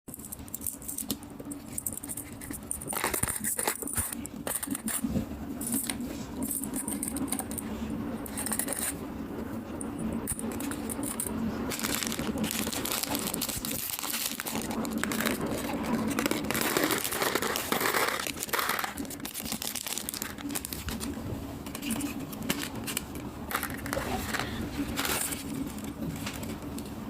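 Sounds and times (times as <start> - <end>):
low hum: 0.1 - 27.0
paper rustling and crackling: 10.3 - 26.9.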